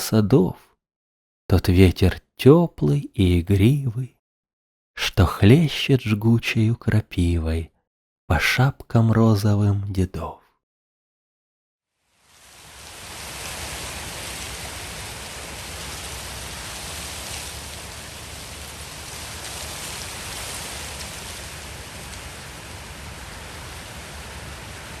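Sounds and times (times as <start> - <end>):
steady rushing hiss: 12.0 - 25.0.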